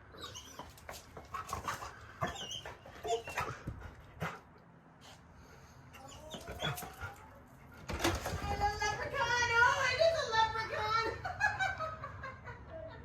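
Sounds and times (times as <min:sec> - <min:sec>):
dog whimpering: 0:00.2 - 0:03.7, 0:06.0 - 0:07.3.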